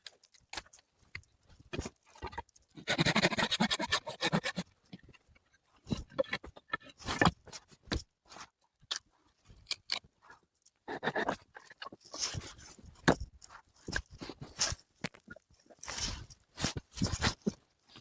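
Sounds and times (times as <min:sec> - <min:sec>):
rasping strokes: 0:02.8 - 0:04.6
scrapes rubs and knocks: 0:02.8 - 0:04.6, 0:15.8 - 0:17.6.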